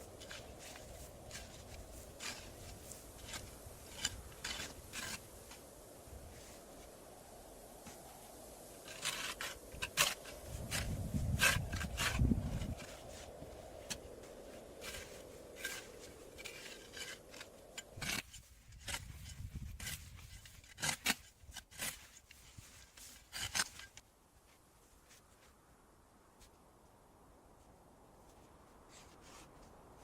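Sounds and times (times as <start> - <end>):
low rumbling hiss: 0.0 - 18.0
scraping and rubbing: 0.1 - 5.6, 8.8 - 14.1, 14.8 - 24.0.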